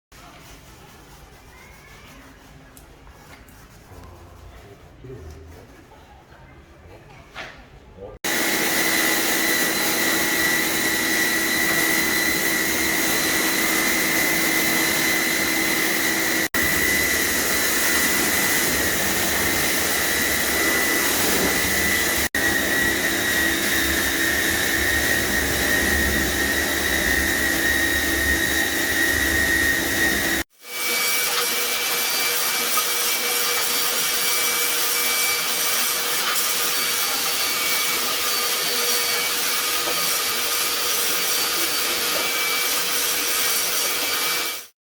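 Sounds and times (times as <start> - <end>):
high motor whine: 8.3 - 30.4
pressure washer spraying hiss: 8.3 - 30.4.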